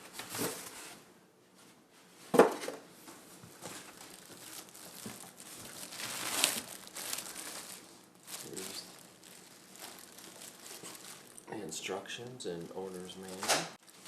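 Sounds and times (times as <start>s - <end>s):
packing material crinkling: 3.6s - 11.6s, 12.7s - 14.0s.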